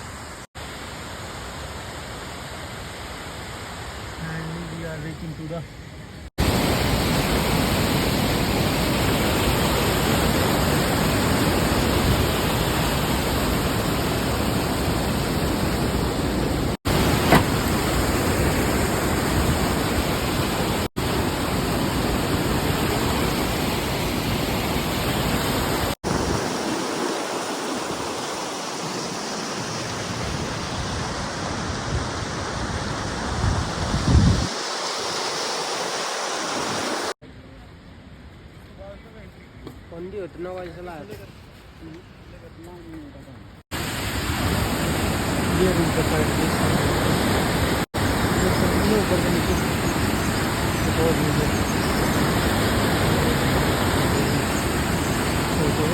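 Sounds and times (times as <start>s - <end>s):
running water rushing: 6.4s - 37.2s, 43.7s - 55.9s.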